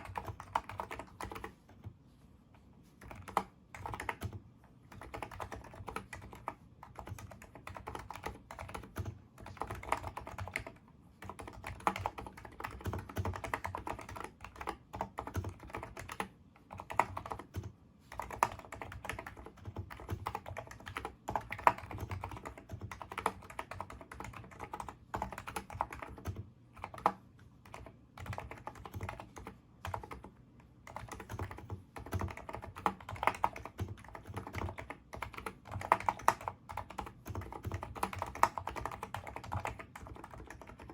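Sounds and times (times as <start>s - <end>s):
keyboard typing: 0.0s - 2.0s, 3.0s - 40.9s.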